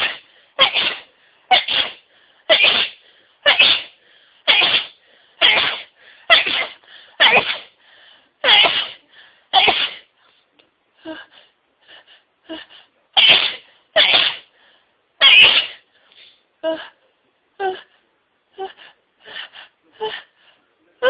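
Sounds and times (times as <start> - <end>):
person sneezing: 0.0 - 7.8, 8.4 - 9.0, 9.6 - 10.1, 13.2 - 14.5, 15.2 - 15.9
quick breaths drawn in: 0.0 - 8.4, 14.5 - 15.0.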